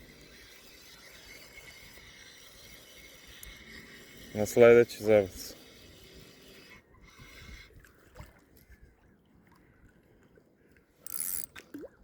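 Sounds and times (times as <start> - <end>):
reel rasping: 0.0 - 7.7, 11.0 - 11.5
reel click: 11.0 - 11.9.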